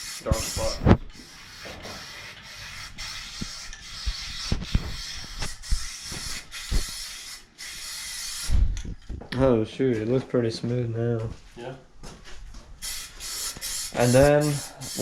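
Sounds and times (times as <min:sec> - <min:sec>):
spray paint hissing: 0:00.0 - 0:08.8, 0:12.8 - 0:15.0.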